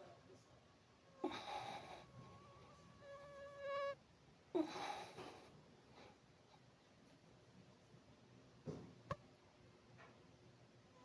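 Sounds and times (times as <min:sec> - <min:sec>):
mosquito whining: 0:01.0 - 0:04.0.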